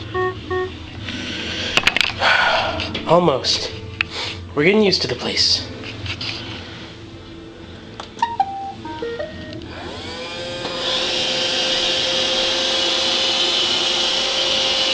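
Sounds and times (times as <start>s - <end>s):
electronic beeps: 0.0s - 0.8s, 8.2s - 9.6s
robot vacuum motor whine: 9.7s - 14.9s.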